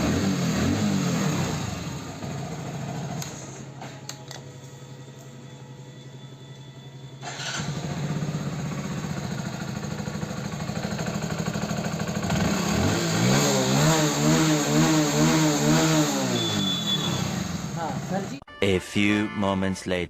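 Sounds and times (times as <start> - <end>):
motorcycle engine revving: 0.0 - 3.7, 7.2 - 18.4.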